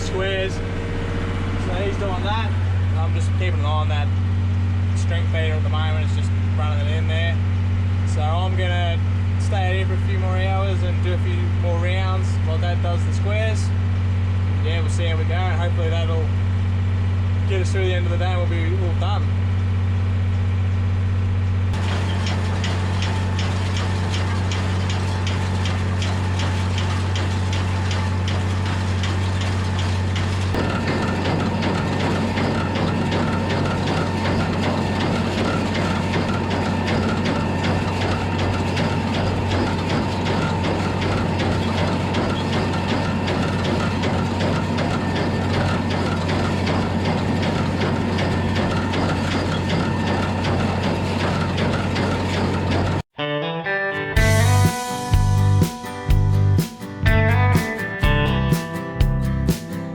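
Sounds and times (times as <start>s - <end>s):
hay baler ticking: 0.0s - 4.1s, 21.8s - 53.0s
rattling rush of machinery: 0.0s - 53.1s
tractor engine running: 0.0s - 53.1s, 54.2s - 59.9s.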